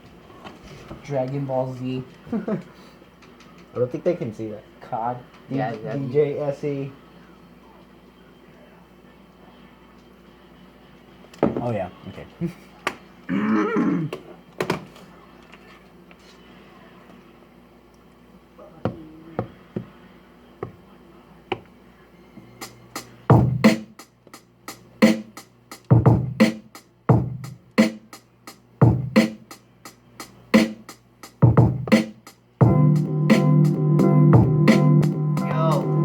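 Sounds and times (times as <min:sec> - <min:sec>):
drum machine beat: 0:22.6 - 0:36.0
sustained synth chord: 0:32.6 - 0:36.0.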